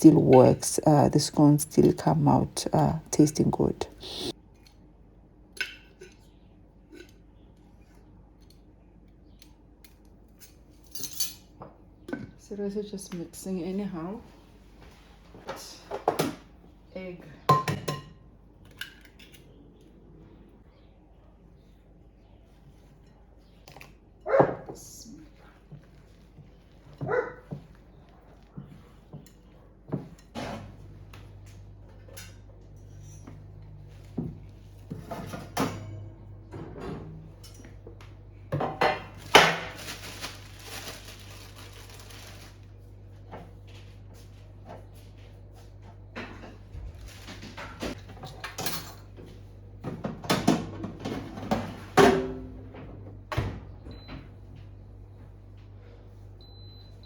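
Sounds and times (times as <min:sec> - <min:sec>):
utensils and dishes clinking: 0:47.7 - 0:49.2.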